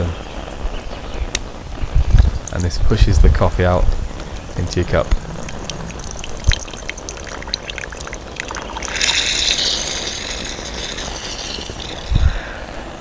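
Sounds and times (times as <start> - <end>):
espresso dripping into a cup: 3.9 - 12.5
espresso maker hissing spurt: 6.5 - 12.5.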